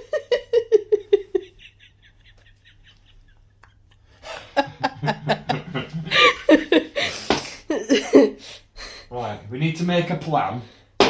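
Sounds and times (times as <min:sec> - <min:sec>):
person laughing: 0:00.0 - 0:08.4.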